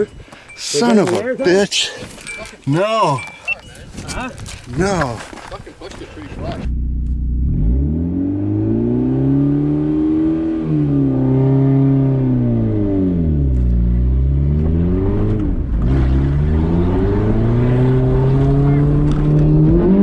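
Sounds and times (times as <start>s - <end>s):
car engine revving: 6.6s - 20.0s.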